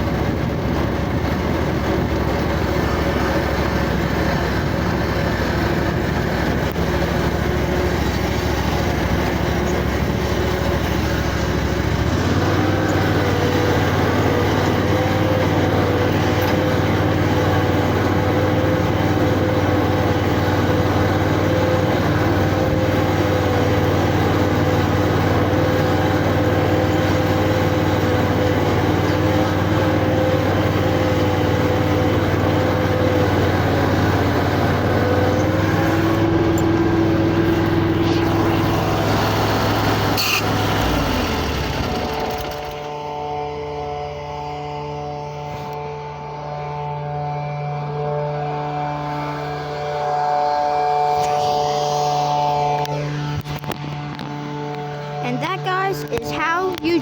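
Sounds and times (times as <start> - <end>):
riding lawnmower engine running: 0.0 - 57.0.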